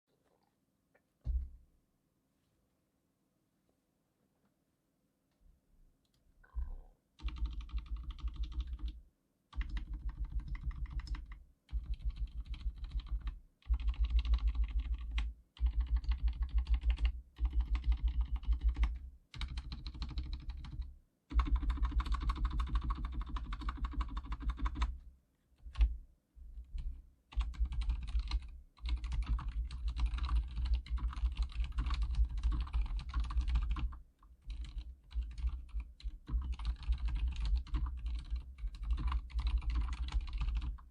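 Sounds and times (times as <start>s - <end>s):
fast typing on keyboard: 7.2s - 25.0s, 25.6s - 25.9s, 26.6s - 40.9s.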